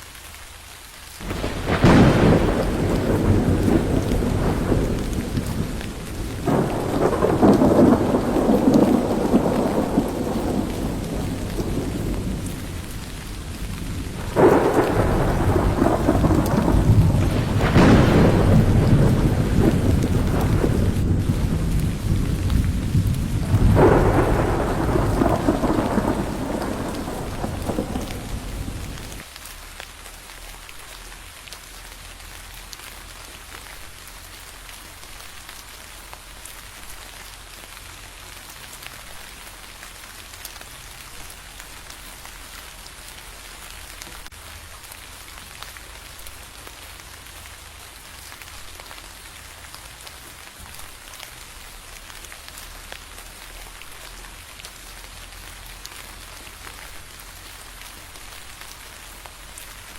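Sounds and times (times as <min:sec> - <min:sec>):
steady rain falling: 0:00.0 - 0:59.9
thunder clap: 0:01.2 - 0:29.3
thunder rumbling: 0:01.2 - 0:29.3.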